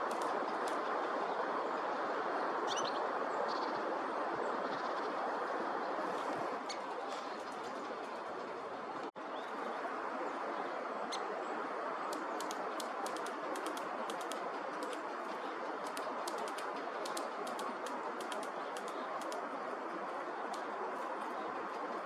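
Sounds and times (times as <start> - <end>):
woodpecker tapping on stalks: 0.0 - 0.8, 12.1 - 19.7
steady outdoor hiss: 0.0 - 22.0.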